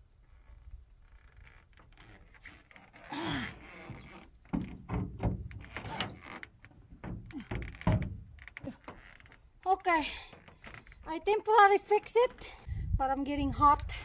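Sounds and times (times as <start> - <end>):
knocks and clicks on roof panels: 4.5 - 8.8.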